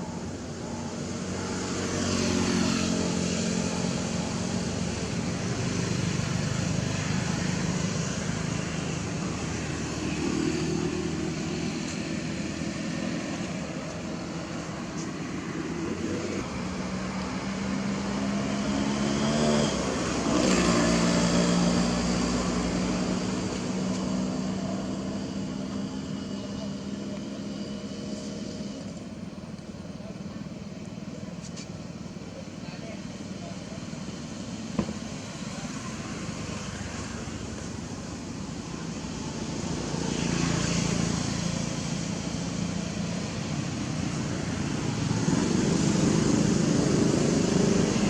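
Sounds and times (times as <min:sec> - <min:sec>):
vehicle engines passing: 0:00.0 - 0:48.0.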